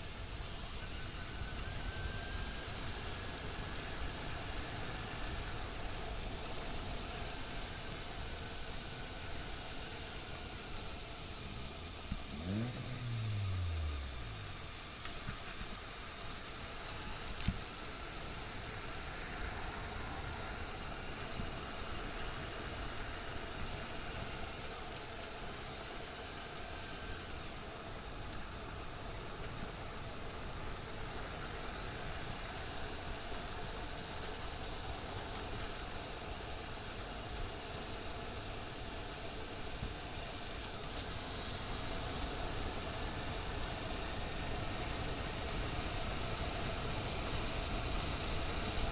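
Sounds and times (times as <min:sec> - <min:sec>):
motorcycle engine cruising: 0:10.2 - 0:15.8.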